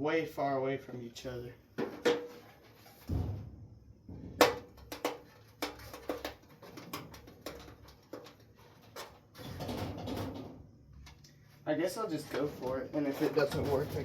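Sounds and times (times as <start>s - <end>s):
wooden shelf parts knocking: 4.1s - 10.6s.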